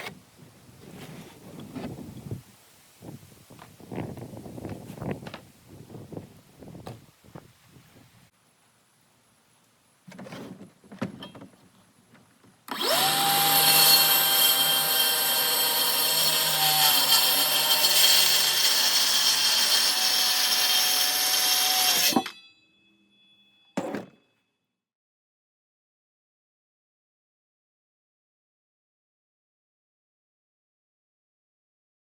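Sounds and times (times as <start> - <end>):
power saw cutting plywood: 12.7 - 22.3.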